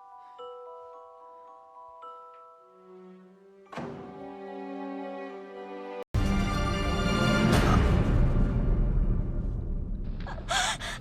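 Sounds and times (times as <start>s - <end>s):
dark tense drama score: 6.2s - 11.0s.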